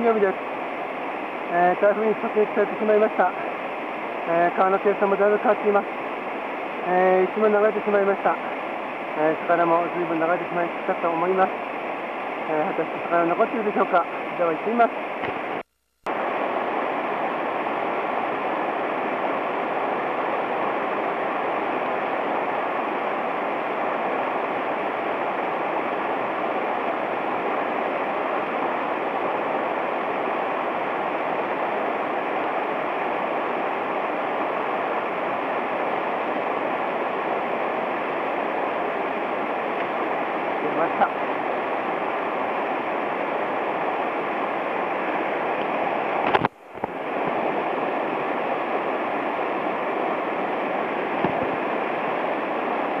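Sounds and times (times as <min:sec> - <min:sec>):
stream rushing: 0:00.0 - 0:53.0.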